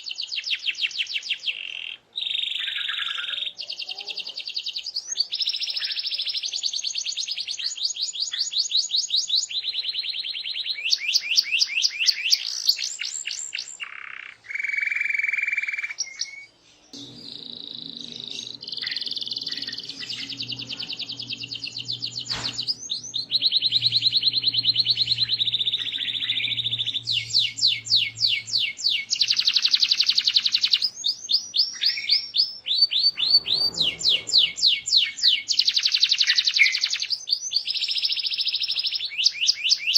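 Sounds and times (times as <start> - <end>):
canary singing trills: 0.0 - 39.9
faint low hum: 16.6 - 29.5.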